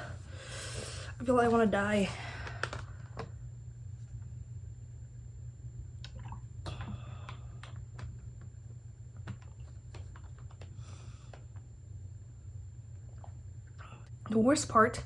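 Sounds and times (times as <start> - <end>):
low steady hum: 0.0 - 15.0
person chewing noodles: 13.0 - 14.1.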